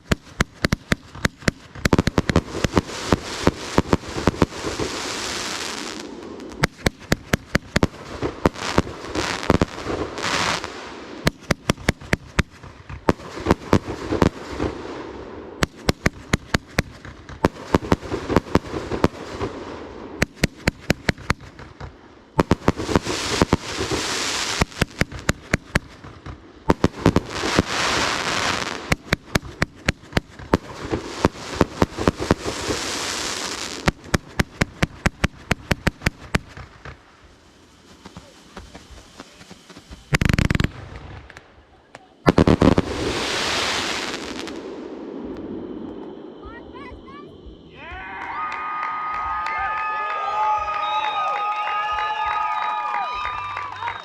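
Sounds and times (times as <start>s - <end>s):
fireworks bangs: 0.0s - 54.0s
fireworks crackling hiss: 0.0s - 54.0s.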